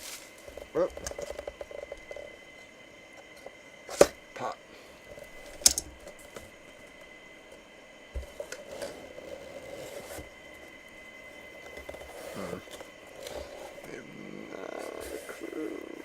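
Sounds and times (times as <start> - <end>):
packaging rustling and scraping: 0.0 - 2.4, 8.2 - 10.6.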